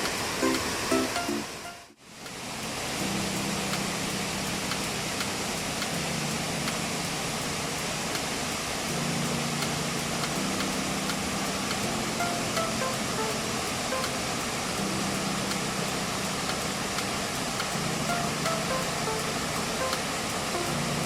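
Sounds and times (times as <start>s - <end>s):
waterfall rushing water: 0.0s - 21.0s.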